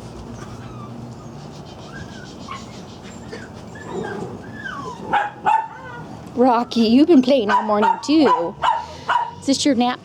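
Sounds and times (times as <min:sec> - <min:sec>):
small dogs whimpering: 0:00.3 - 0:09.2.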